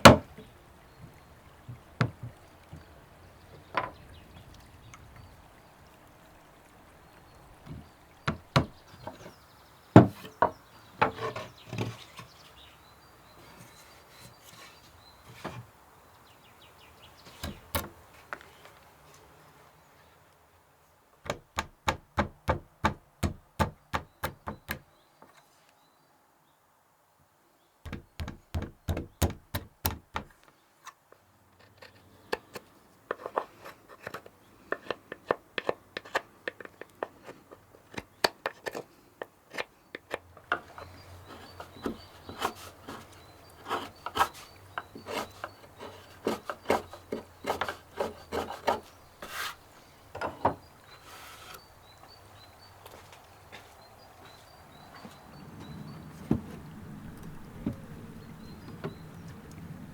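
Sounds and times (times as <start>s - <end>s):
scraping and tapping on wood: 3.6s - 4.0s, 7.7s - 9.4s, 10.0s - 12.5s, 13.5s - 15.7s, 17.2s - 19.2s, 27.9s - 51.7s
hand tool strokes on wood: 41.1s - 49.9s, 51.0s - 51.7s.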